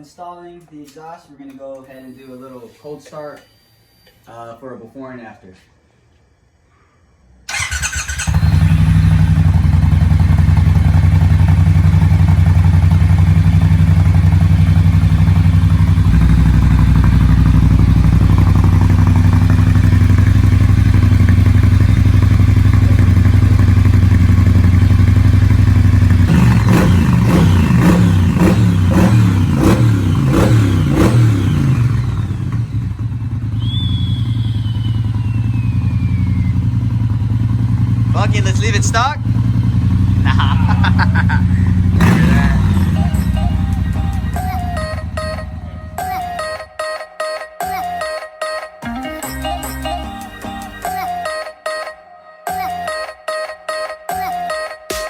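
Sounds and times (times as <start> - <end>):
short falling squeal: 1.9 - 4.3, 33.6 - 36.9
motorcycle engine cranking: 7.5 - 34.4, 35.0 - 46.2
motorcycle engine idling and revving: 7.5 - 46.6.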